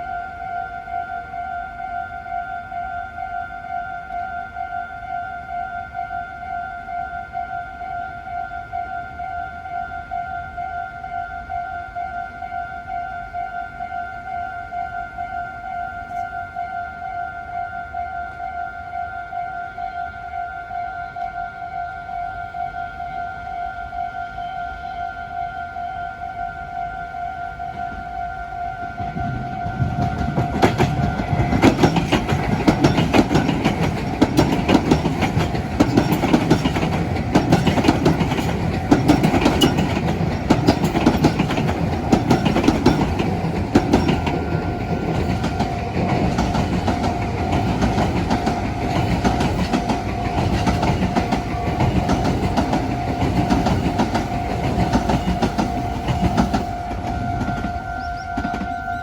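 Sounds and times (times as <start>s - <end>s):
crossing warning bell ringing: 0.0s - 59.0s
train wheels clacking: 29.0s - 59.0s.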